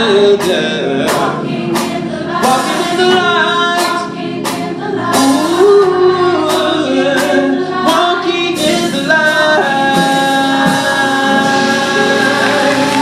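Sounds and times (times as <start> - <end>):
vocal ensemble singing in harmony: 0.0 - 13.0.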